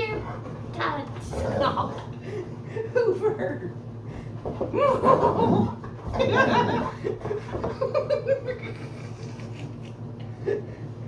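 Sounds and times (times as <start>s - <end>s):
person chuckling: 4.8s - 10.7s.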